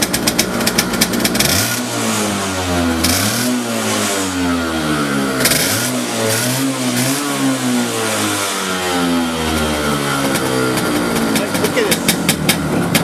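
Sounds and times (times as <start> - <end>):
go-kart engine running: 0.0 - 13.0.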